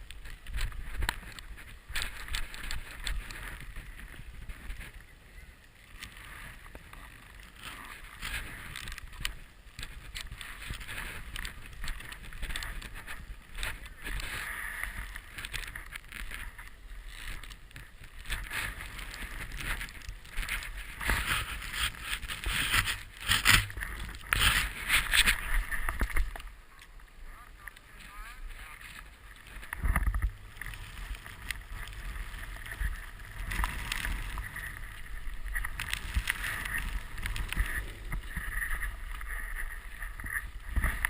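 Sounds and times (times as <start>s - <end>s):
snowboard carving through powder: 6.1s - 15.4s, 16.2s - 26.6s, 27.2s - 41.0s.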